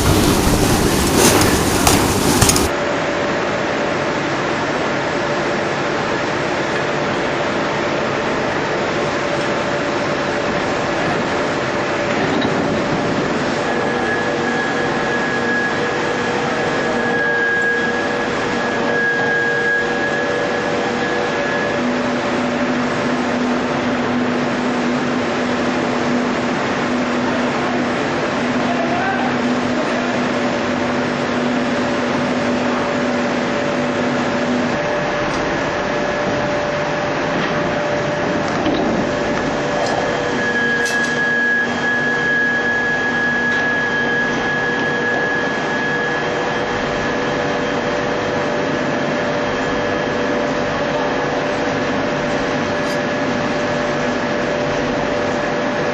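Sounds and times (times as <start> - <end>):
ring rolling machine running: 0.0 - 2.8, 17.9 - 55.9
thin high whine: 32.8 - 48.0.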